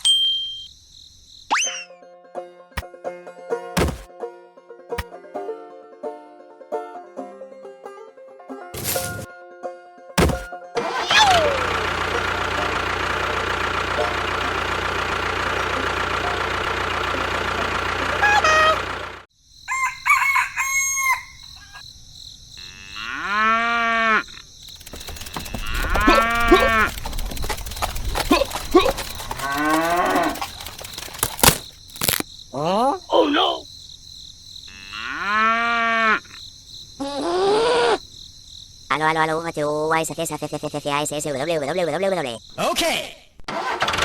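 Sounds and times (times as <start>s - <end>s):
animal calls: 22.6s - 31.3s
noisy machine-like sound: 24.6s - 32.2s.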